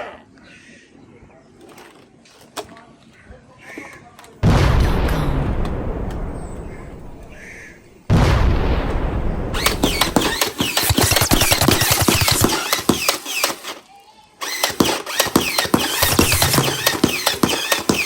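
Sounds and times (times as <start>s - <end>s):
loud gunshot booms: 4.4s - 12.7s
rapid automatic gunfire: 9.6s - 13.8s, 14.4s - 18.0s.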